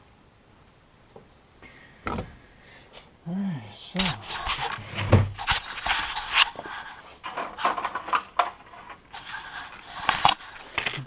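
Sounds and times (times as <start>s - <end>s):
objects rustling and knocking: 4.0s - 11.0s.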